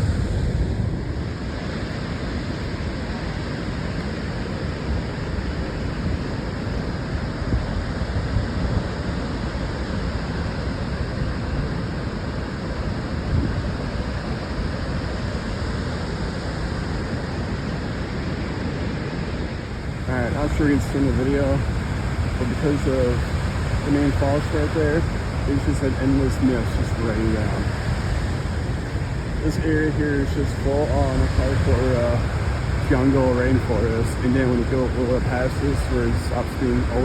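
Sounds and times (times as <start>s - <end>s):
wind rumbling on microphone: 0.0s - 37.0s
waterfall rushing: 17.7s - 37.0s.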